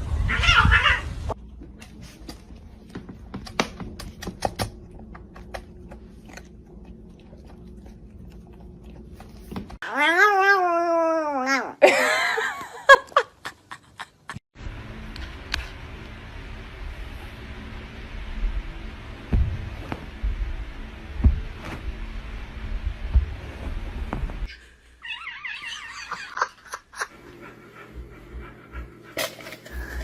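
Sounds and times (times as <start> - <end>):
cat meowing: 0.3 - 1.1, 9.8 - 11.8.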